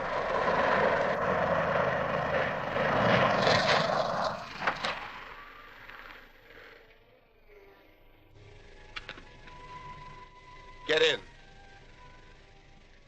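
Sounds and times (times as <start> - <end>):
car engine running loudly: 0.0 - 6.5.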